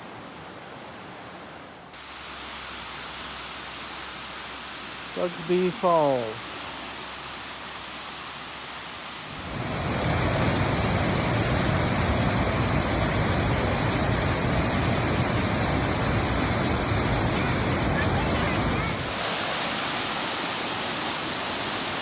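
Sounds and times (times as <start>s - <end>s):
waterfall rushing: 0.0s - 22.0s
soft hiss: 1.9s - 9.6s.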